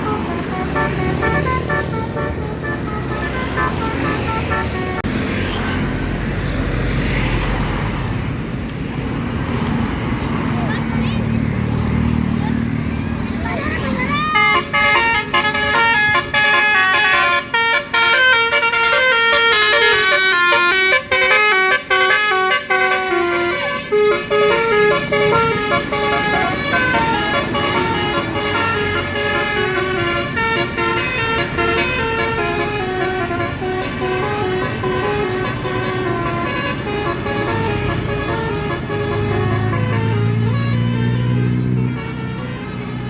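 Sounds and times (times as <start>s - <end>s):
musical horn playing a tune: 0.0s - 5.1s, 14.3s - 43.0s.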